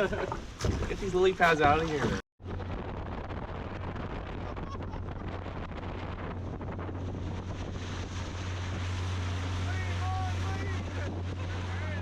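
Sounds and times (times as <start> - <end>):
wind rushing across microphone: 0.1 - 12.0
low engine hum: 2.4 - 12.0.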